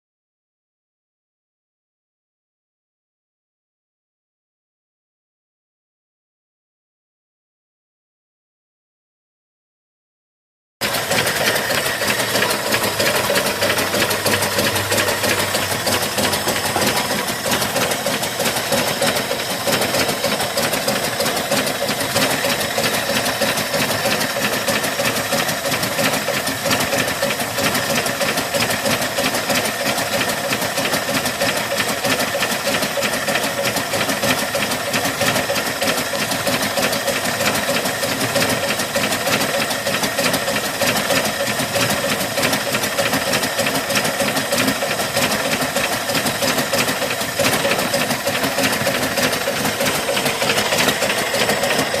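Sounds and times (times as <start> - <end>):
engine idling with ticking: 10.8 - 52.0.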